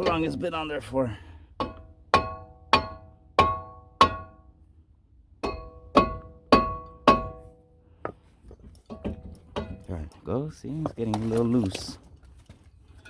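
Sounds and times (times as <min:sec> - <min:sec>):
axe striking metal clang: 0:01.6 - 0:04.4, 0:05.4 - 0:07.5.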